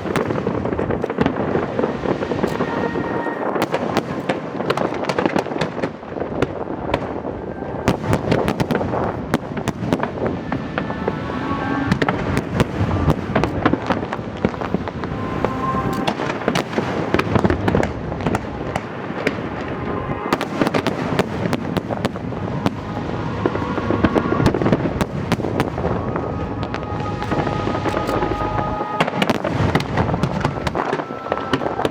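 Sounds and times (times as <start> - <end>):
fireworks bursting and crackling: 0.0 - 31.9
music playing: 1.7 - 3.8, 9.8 - 31.6.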